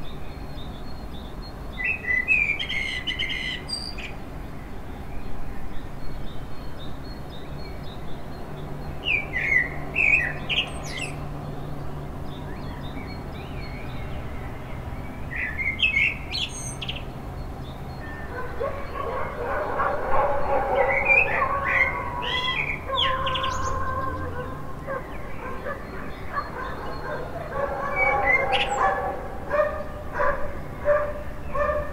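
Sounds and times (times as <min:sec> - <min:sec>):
birds chirping: 0:04.8 - 0:31.9
distant dogs barking: 0:18.2 - 0:31.9.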